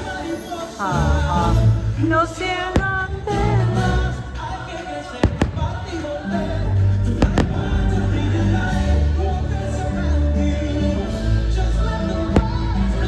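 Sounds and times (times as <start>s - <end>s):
firework bangs: 5.2s - 6.0s
music with deep low notes: 6.4s - 13.0s.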